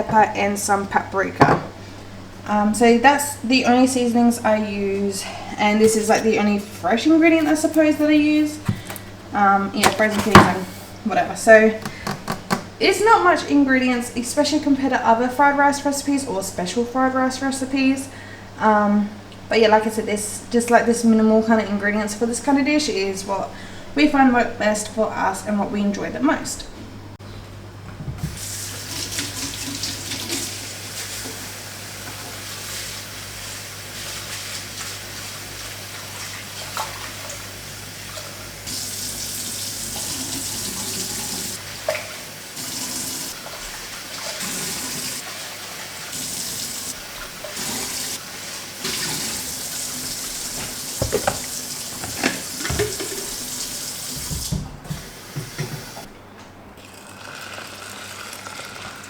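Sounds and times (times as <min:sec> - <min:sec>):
dishes knocking against sink: 0:05.8 - 0:09.1, 0:09.8 - 0:10.8, 0:50.6 - 0:53.3
tap water running into sink: 0:05.8 - 0:10.9, 0:28.1 - 0:32.8, 0:34.0 - 0:56.1.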